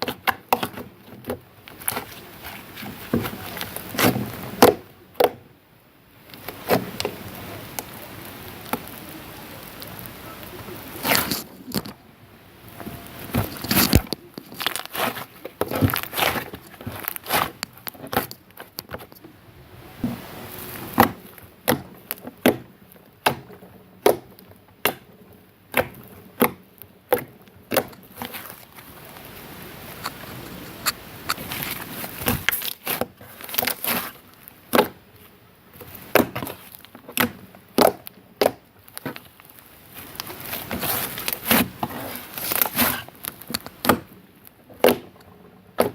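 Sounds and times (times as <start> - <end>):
soft slime crackling: 0.0 - 4.8, 6.2 - 45.9.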